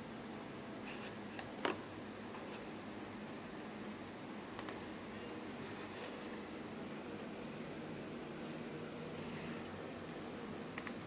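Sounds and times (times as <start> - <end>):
steady low hiss: 0.0 - 11.0.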